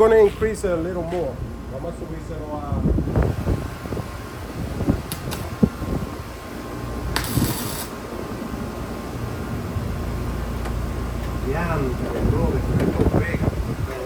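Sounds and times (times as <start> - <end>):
cooling fan humming: 0.0 - 14.0
short hiss: 7.2 - 7.9.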